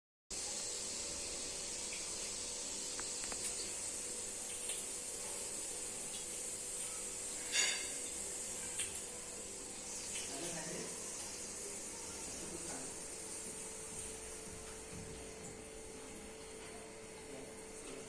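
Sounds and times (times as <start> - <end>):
steam hissing from pressure cooker: 0.3 - 14.0.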